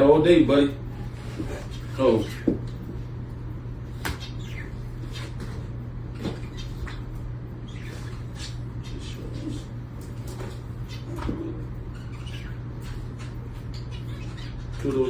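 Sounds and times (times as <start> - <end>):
steady low hum: 0.0 - 15.0
dogs whining: 4.1 - 5.4, 6.1 - 10.0, 10.6 - 14.9.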